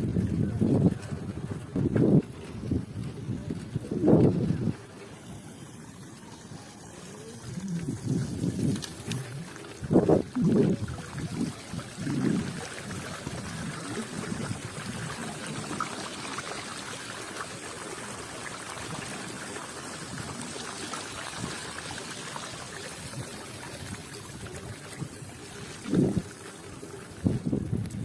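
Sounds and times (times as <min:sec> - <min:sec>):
running water rushing: 0:00.0 - 0:28.0.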